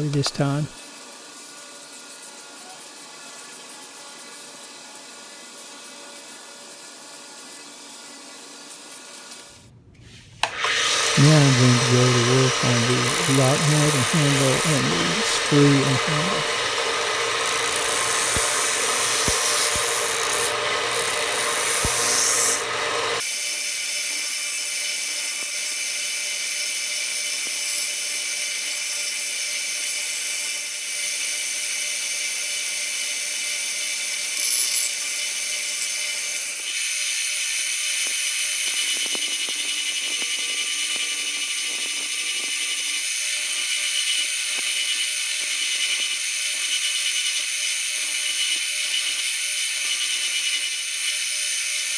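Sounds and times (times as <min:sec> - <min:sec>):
power tool scrubbing steel: 0:10.4 - 0:23.2.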